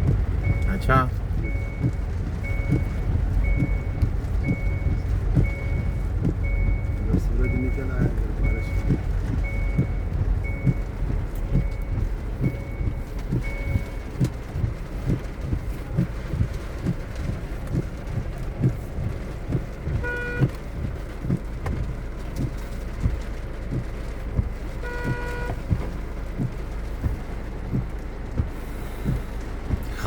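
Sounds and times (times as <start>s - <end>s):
low thumps: 0.0s - 30.0s
traffic rumble: 0.0s - 30.0s
vehicle reversing beeps: 0.0s - 30.0s
horn blasts: 20.0s - 20.6s, 24.8s - 25.8s.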